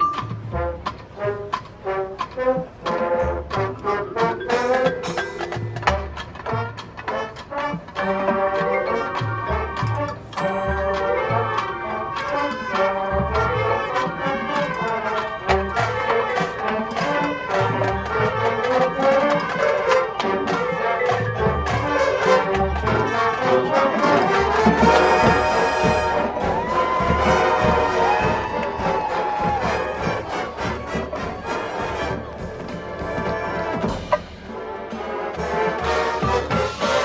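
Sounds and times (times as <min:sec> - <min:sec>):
marching band brass: 0:00.0 - 0:37.0
steady drum beat: 0:12.9 - 0:37.0.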